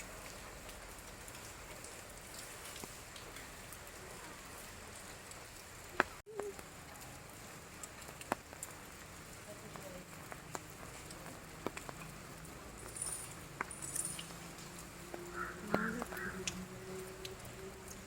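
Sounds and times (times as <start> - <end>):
rain pattering: 0.0 - 18.0.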